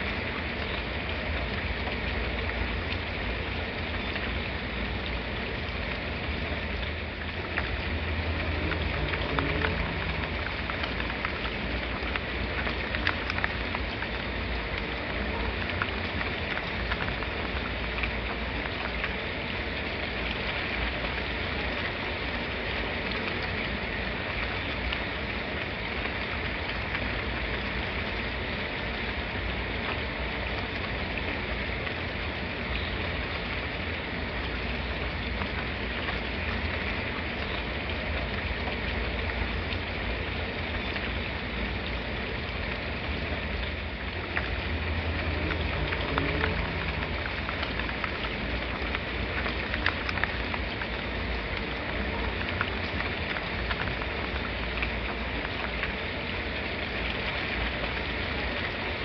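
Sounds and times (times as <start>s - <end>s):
rain hissing: 0.0s - 59.0s
low rumble: 42.8s - 49.0s.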